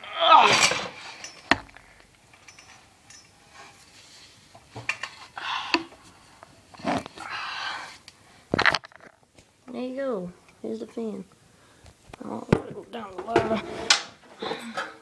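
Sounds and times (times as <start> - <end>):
metallic clinks and clatter: 2.3 - 3.4.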